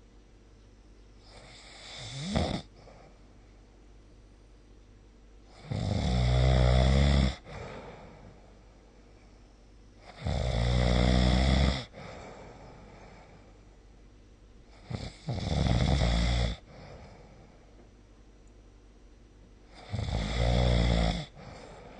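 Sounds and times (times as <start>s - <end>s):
person snoring: 1.2s - 3.1s, 5.5s - 8.5s, 10.0s - 13.5s, 14.8s - 17.5s, 19.7s - 21.9s.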